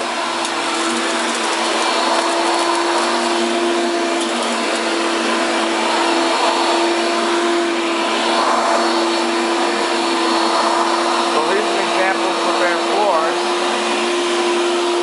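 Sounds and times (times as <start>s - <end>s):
upright vacuum running: 0.0s - 15.0s.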